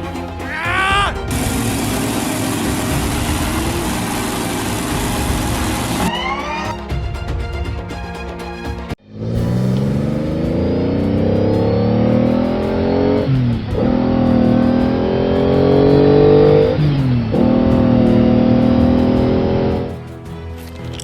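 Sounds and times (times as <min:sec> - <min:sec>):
engine accelerating through gears: 0:01.3 - 0:06.7, 0:09.0 - 0:19.9.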